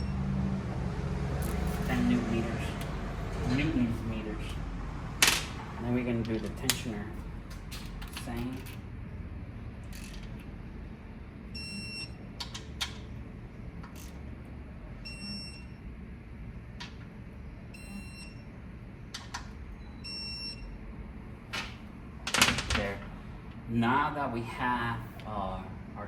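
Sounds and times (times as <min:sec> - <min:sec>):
short electronic beeps: 0:11.6 - 0:12.2, 0:15.1 - 0:15.8, 0:17.8 - 0:18.4, 0:19.8 - 0:20.8.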